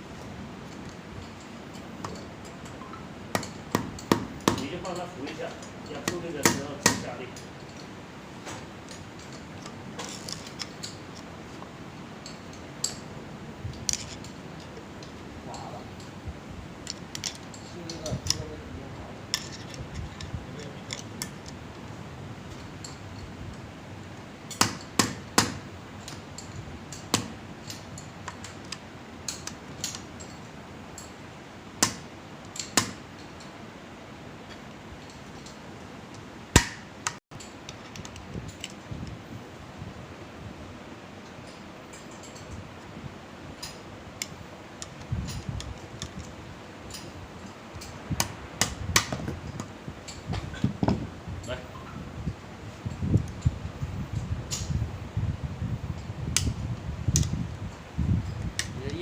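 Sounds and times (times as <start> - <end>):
hammer striking metal: 6.0 - 7.1
metallic clicks of hand tools: 12.2 - 13.1, 24.5 - 31.1, 31.8 - 33.6, 41.2 - 42.7, 43.6 - 50.2.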